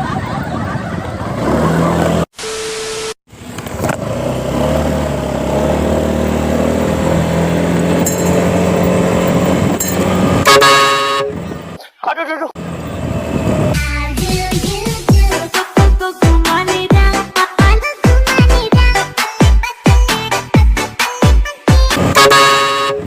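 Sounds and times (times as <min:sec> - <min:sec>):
vehicle engine running: 0:03.3 - 0:11.8
multi-toned vehicle horn: 0:10.4 - 0:11.6, 0:22.0 - 0:23.0.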